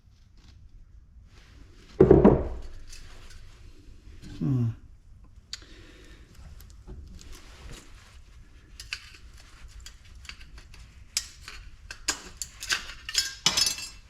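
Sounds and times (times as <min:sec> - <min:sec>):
tools clinking on metal: 0:12.1 - 0:14.0.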